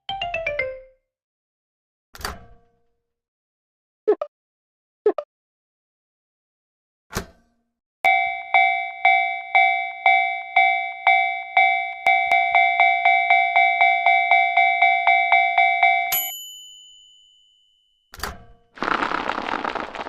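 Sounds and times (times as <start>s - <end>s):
level crossing bell ringing: 8.1s - 17.3s.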